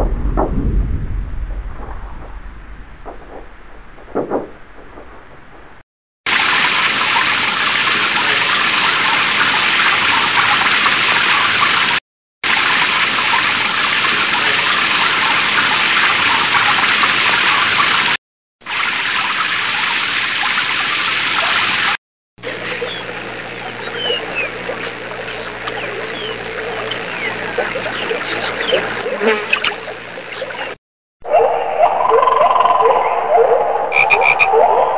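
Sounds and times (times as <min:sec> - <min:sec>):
rushing water: 0:06.3 - 0:29.1
low steady hum: 0:22.4 - 0:30.8.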